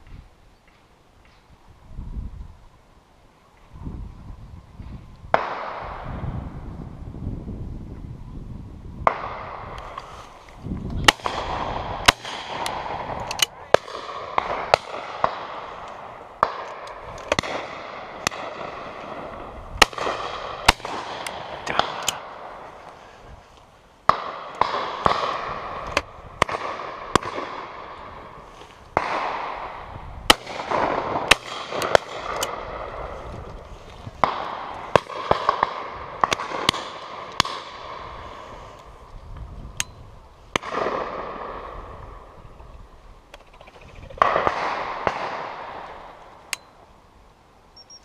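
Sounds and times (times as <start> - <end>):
shotgun shots with echo: 11.1 - 15.7, 24.1 - 25.8, 29.0 - 33.0, 44.2 - 45.9.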